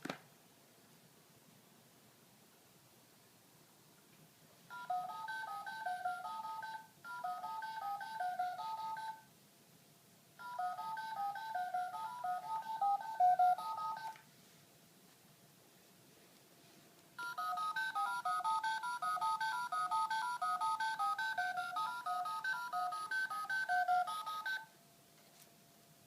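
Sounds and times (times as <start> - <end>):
touch-tone keypad beeps: 4.7 - 9.2, 10.4 - 14.2, 17.2 - 24.7.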